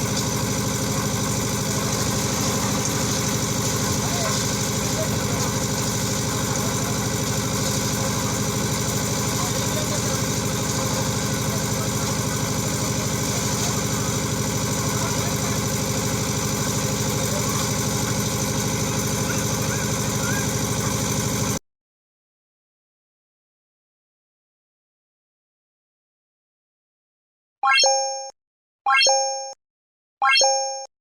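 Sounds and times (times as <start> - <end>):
concrete mixer engine running: 0.0 - 21.6.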